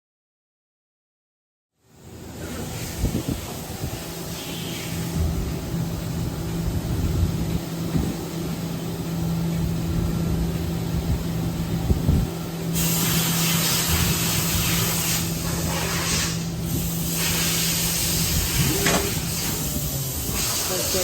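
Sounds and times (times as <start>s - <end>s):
loud spraying hiss: 12.7s - 21.0s.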